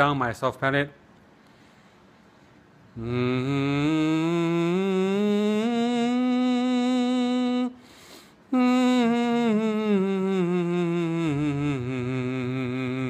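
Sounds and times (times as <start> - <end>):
person singing with vibrato: 3.0 - 13.0.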